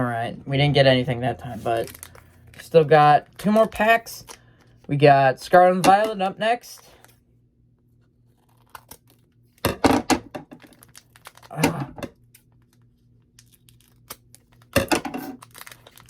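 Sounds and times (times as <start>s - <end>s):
foil pack tearing and crinkling: 1.5s - 4.4s, 8.3s - 9.6s, 10.6s - 16.0s.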